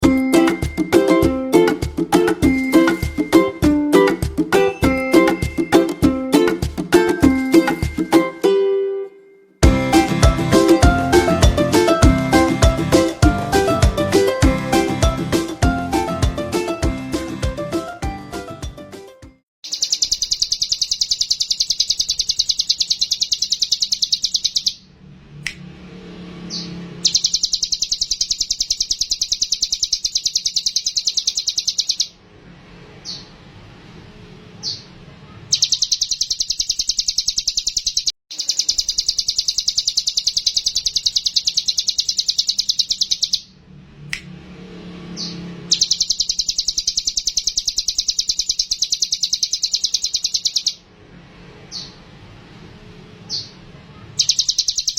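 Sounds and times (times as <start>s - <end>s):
bird singing rattling song: 0.0s - 8.4s, 19.6s - 24.9s, 26.4s - 32.2s, 32.9s - 33.4s, 34.6s - 34.9s, 35.5s - 43.5s, 45.1s - 50.8s, 51.6s - 52.0s, 53.2s - 53.6s, 54.2s - 54.9s.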